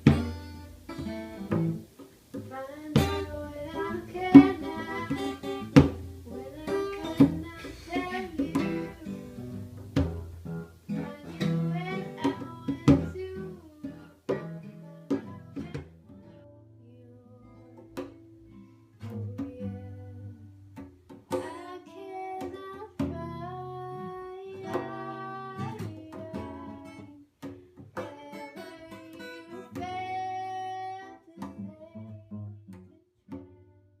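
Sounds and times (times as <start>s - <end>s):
acoustic guitar picking: 0.0s - 34.0s
woman singing: 2.4s - 9.8s, 10.9s - 18.3s, 19.0s - 20.6s, 21.3s - 27.3s, 28.0s - 34.0s.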